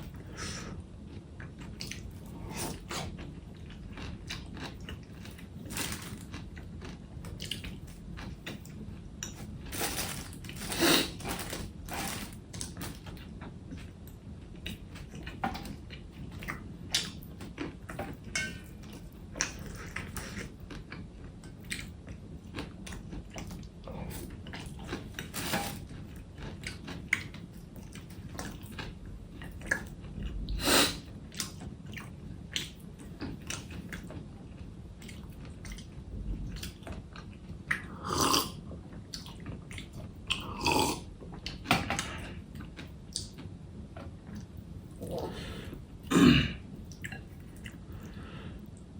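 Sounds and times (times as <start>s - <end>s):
person chewing and biting: 1.1s - 12.8s
small sharp crunches: 4.0s - 7.8s, 9.2s - 13.0s.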